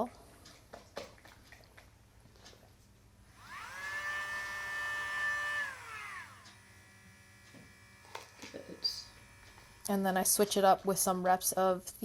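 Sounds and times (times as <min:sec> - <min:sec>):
rotary nail grinder whining: 0:03.3 - 0:10.6.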